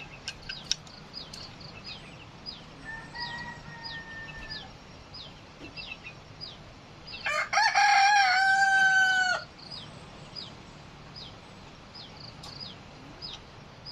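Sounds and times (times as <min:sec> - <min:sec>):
small bird chirping: 0:00.0 - 0:07.3, 0:09.5 - 0:13.9
rooster crowing: 0:02.8 - 0:04.8, 0:07.2 - 0:09.5.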